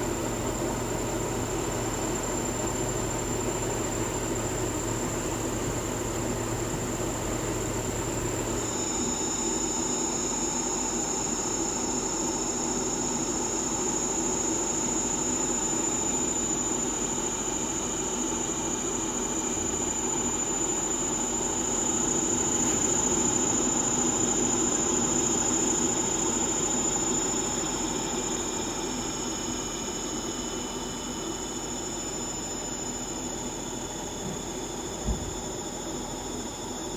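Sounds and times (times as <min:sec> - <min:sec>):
short knock: 0:35.0 - 0:35.4.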